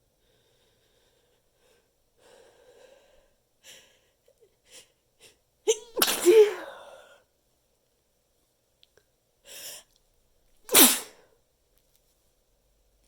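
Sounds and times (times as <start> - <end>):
muffled sneezes: 5.7 - 7.1, 10.7 - 11.2.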